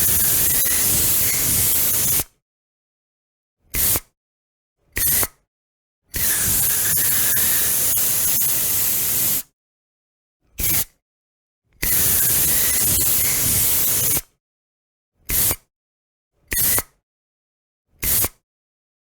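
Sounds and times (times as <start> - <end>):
aerosol spray can hissing: 0.1 - 2.2, 6.2 - 9.5.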